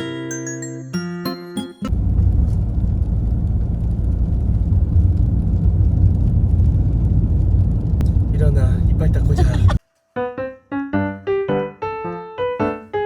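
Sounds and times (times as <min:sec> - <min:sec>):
piano tune: 0:00.0 - 0:02.0, 0:09.8 - 0:13.0
wind buffeting microphone: 0:01.9 - 0:09.8.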